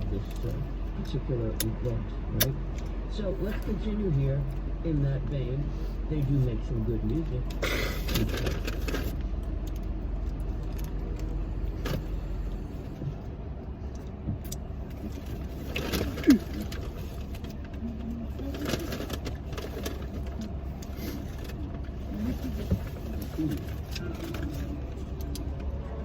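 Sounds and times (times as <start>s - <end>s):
car hum: 0.0s - 26.0s
small clicks and rustles: 8.0s - 13.2s, 13.8s - 25.8s.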